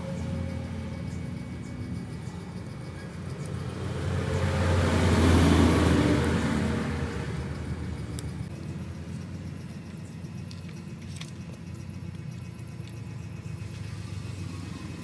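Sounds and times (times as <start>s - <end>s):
vehicle passing by: 0.0s - 8.9s.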